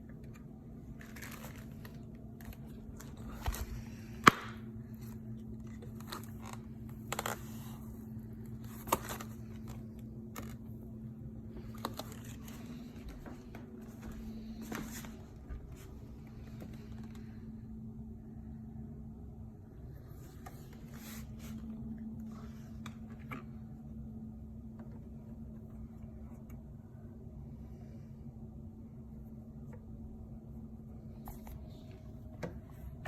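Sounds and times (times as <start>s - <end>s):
steady low hum: 0.0s - 33.0s
packaging crinkling: 0.8s - 7.8s.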